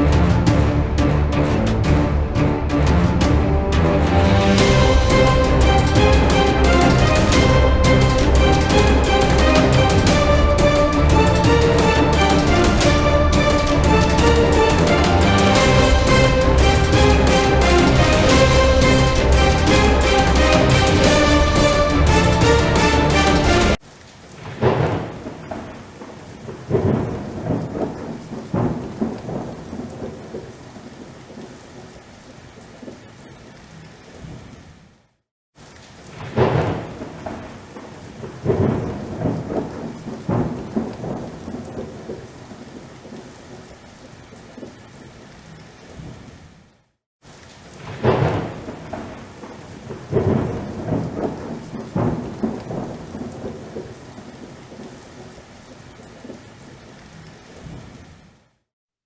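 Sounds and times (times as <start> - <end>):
thunder rolling: 0.0 - 23.8, 24.4 - 31.4, 36.1 - 43.8, 47.8 - 54.9
heavy rain falling: 0.0 - 58.6.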